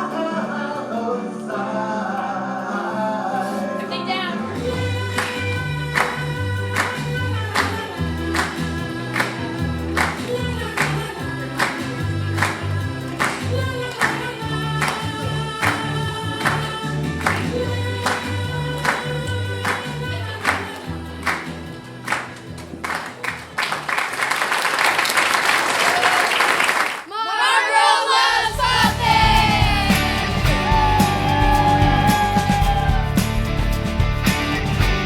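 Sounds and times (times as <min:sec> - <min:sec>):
group singing children's song: 0:00.0 - 0:23.4, 0:27.1 - 0:33.1
drum beat and bass: 0:28.5 - 0:35.0.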